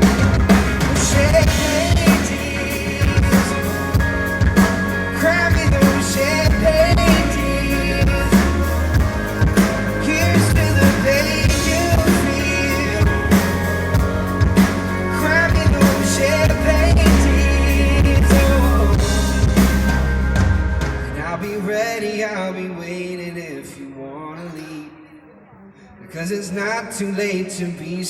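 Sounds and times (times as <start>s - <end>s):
wavering melody line: 0.0s - 21.4s
drum kit beat: 0.0s - 21.6s
bass: 0.0s - 22.4s.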